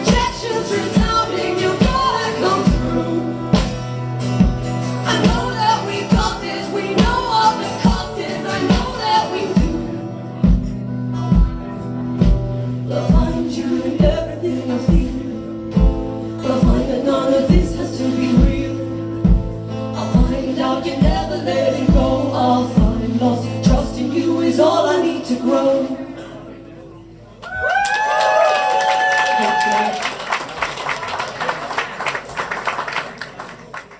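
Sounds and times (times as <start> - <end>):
sung vocal harmonies: 0.0 - 10.4, 12.7 - 26.6
live band performing: 0.0 - 26.5
guitar: 0.0 - 27.3.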